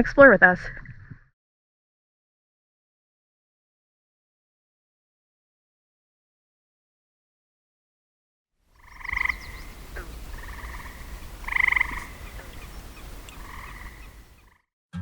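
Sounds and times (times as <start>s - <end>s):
frog trilling: 8.8s - 14.5s.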